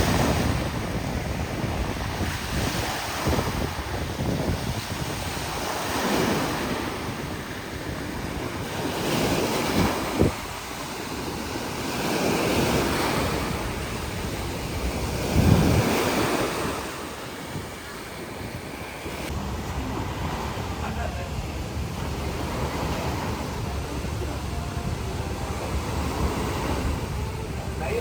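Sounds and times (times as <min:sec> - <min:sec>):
sea waves washing in: 0:00.0 - 0:28.0
wind buffeting microphone: 0:00.0 - 0:28.0.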